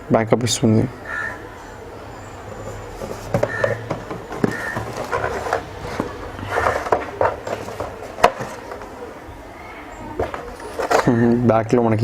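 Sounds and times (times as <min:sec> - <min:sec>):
packaging and parts clicking: 0:02.7 - 0:08.9, 0:10.2 - 0:11.2.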